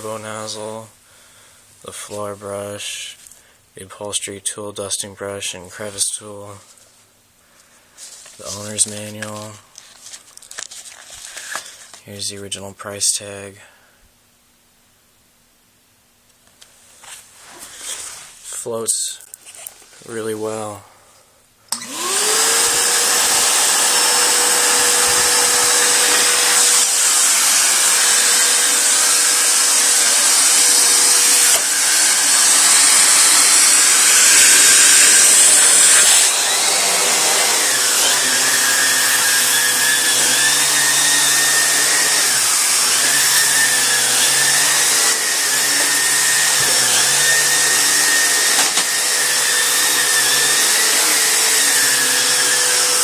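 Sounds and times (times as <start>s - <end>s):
vacuum cleaner running: 21.7s - 53.0s.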